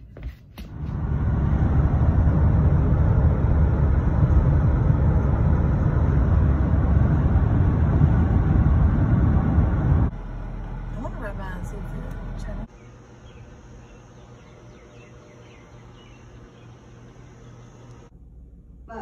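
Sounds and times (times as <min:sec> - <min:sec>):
car driving rumble inside cabin: 0:00.7 - 0:12.7.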